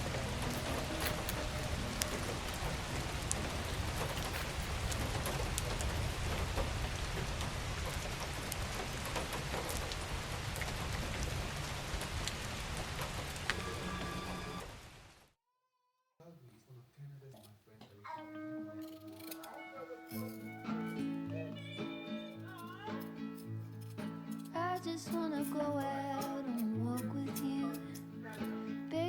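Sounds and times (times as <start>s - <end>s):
raindrops hitting a surface: 0.0s - 15.3s
steady rain falling: 0.0s - 15.4s.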